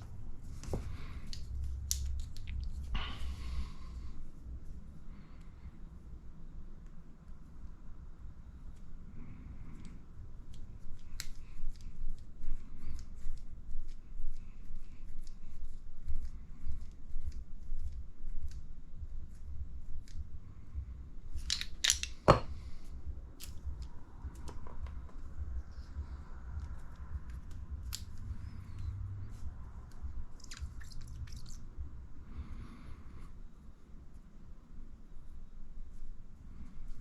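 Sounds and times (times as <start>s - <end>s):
light clicks and taps of small parts: 9.7s - 12.3s.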